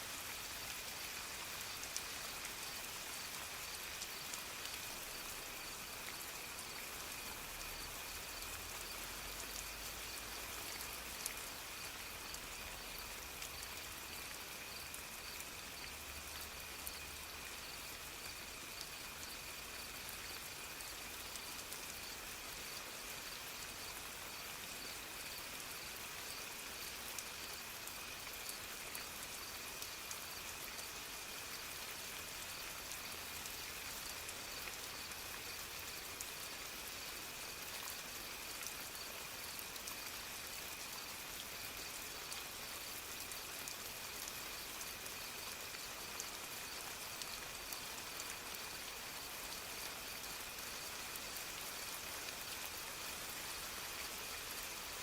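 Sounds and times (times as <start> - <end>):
soft steady rain: 0.0 - 55.0
rain drop ticks: 0.4 - 19.5, 26.3 - 37.0, 37.6 - 49.0.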